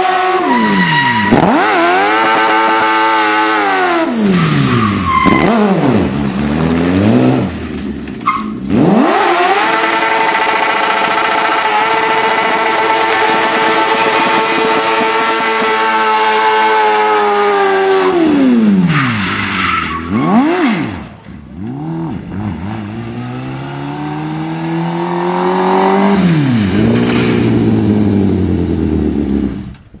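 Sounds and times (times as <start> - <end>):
motorcycle engine revving: 0.0 - 30.0
tyre squeal: 0.4 - 1.8, 4.4 - 5.7, 8.2 - 8.6, 18.9 - 20.4.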